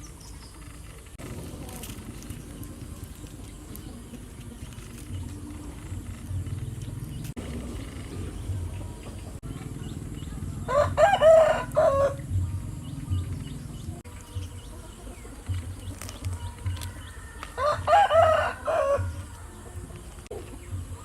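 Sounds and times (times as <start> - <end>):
rooster crowing: 10.6 - 12.4, 16.8 - 19.7.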